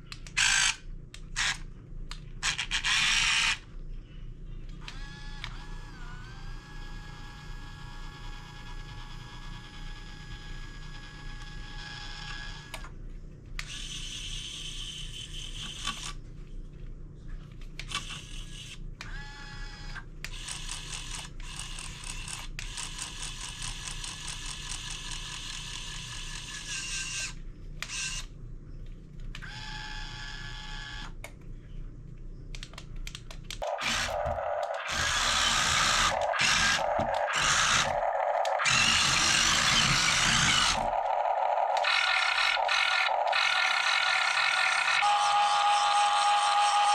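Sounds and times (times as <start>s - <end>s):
small electric motors whirring: 0.4s - 0.8s, 2.4s - 3.6s, 4.8s - 12.9s, 13.6s - 16.2s, 17.8s - 28.3s, 29.4s - 31.2s, 33.6s - 46.9s
harsh motor whir: 33.6s - 46.9s.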